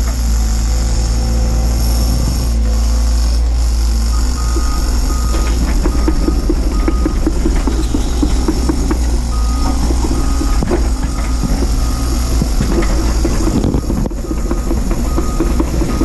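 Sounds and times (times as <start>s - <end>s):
excavator diesel engine: 0.0s - 16.0s.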